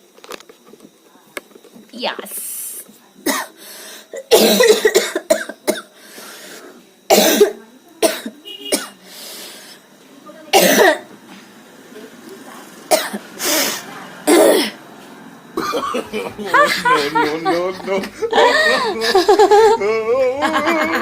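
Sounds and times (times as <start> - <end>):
woman coughing: 3.2 - 5.9, 7.1 - 9.0, 10.5 - 11.1, 12.9 - 13.2, 14.3 - 14.8, 15.6 - 17.1.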